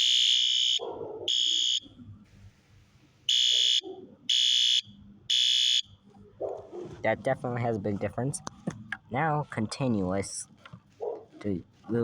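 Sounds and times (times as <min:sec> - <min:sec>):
fire alarm horn blasts: 0:00.0 - 0:01.9, 0:03.3 - 0:05.9.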